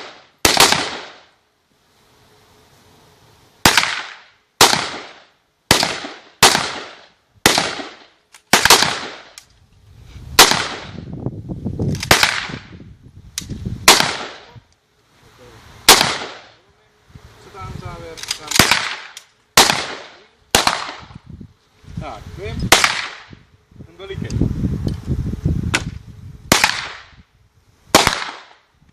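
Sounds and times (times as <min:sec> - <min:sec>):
rifle shots with echo: 0:00.0 - 0:01.2, 0:03.6 - 0:09.4, 0:10.4 - 0:11.0, 0:13.9 - 0:14.5, 0:15.9 - 0:16.6, 0:18.4 - 0:21.1, 0:22.7 - 0:23.3, 0:26.5 - 0:27.1, 0:27.9 - 0:28.6.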